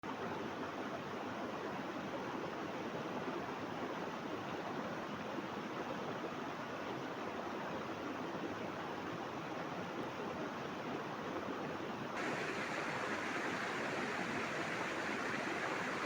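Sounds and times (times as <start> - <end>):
flowing water rushing: 12.2 - 16.0.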